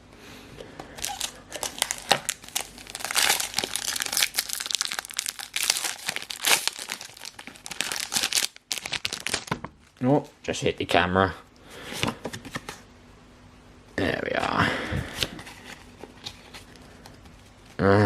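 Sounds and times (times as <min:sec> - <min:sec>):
foil wrapper crinkling: 0:01.0 - 0:10.1.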